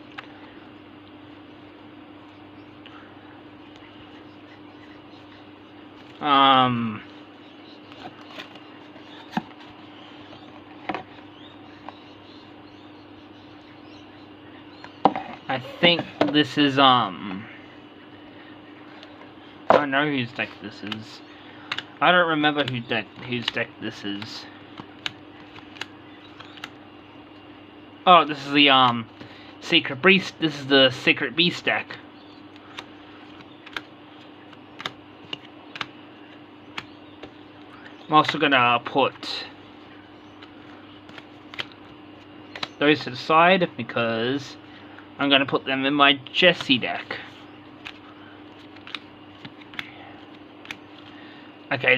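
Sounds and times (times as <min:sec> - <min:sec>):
faint steady hum: 0:00.0 - 0:51.9
trading cards clicking: 0:21.7 - 0:21.9, 0:24.2 - 0:26.8, 0:32.5 - 0:36.0, 0:36.7 - 0:38.4, 0:40.3 - 0:42.8, 0:46.5 - 0:46.8, 0:47.8 - 0:51.2.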